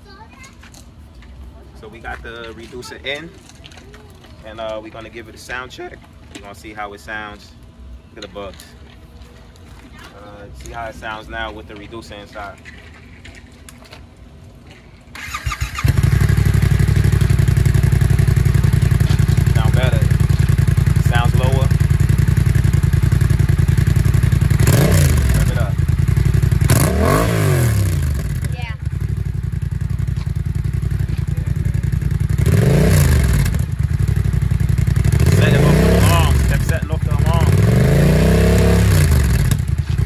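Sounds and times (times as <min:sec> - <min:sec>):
motorcycle engine starting and idling: 0:15.1 - 0:40.0.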